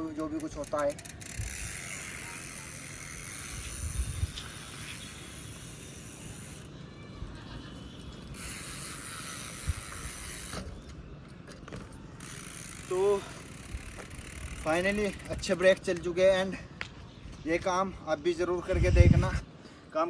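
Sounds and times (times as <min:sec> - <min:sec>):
bicycle freewheel hub ticking: 0:00.1 - 0:06.7, 0:08.3 - 0:10.6, 0:12.2 - 0:15.8
bicycle tyres rolling: 0:00.2 - 0:16.2.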